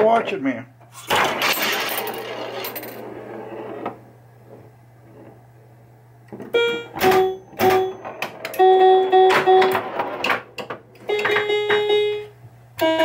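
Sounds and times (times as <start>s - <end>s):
pinball machine hum: 0.0s - 13.0s
pinball rolling clatter: 1.0s - 5.3s, 6.8s - 12.0s.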